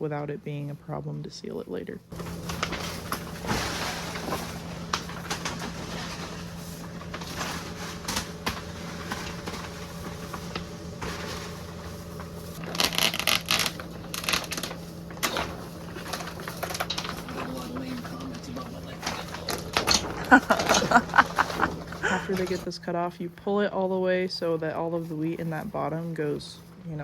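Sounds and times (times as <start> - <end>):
steady engine hum: 0.0 - 27.0
plastic bag rustling and crinkling: 2.1 - 22.7.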